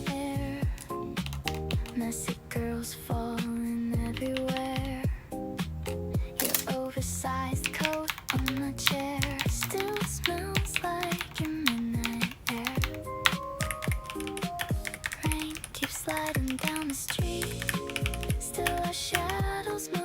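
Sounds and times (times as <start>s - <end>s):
pop song with steady beat: 0.0s - 20.0s
calculator key presses: 7.6s - 19.4s.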